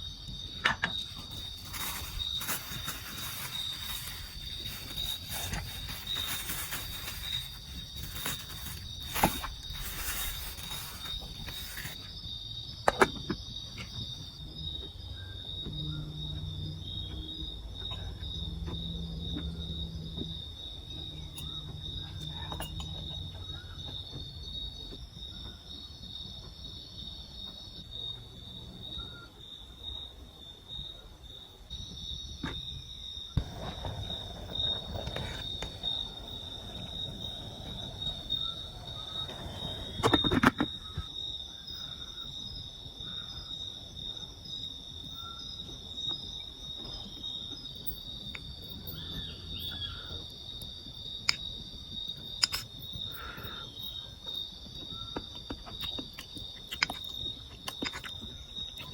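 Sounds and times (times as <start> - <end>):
insects trilling: 0.0 - 58.9.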